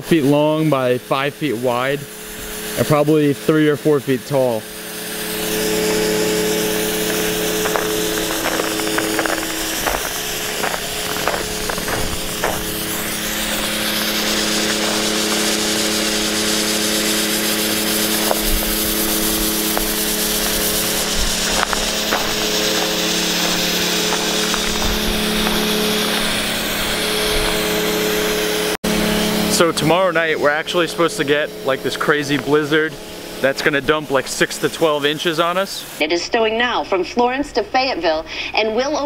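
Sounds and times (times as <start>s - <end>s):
machine motor humming: 0.0s - 36.0s
hissing noise: 4.5s - 28.8s, 29.6s - 36.0s.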